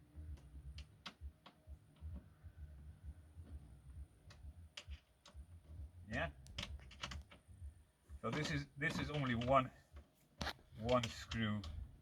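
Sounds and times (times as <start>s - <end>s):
faint clicks and taps of screw: 0.3s - 2.4s, 3.4s - 5.8s, 6.4s - 7.5s, 8.3s - 11.9s.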